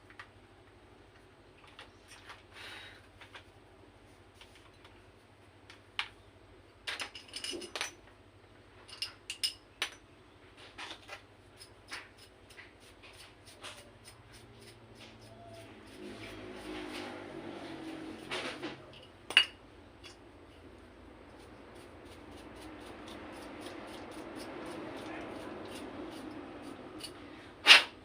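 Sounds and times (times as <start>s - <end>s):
metal tools clinking: 6.9s - 8.0s, 8.8s - 10.0s.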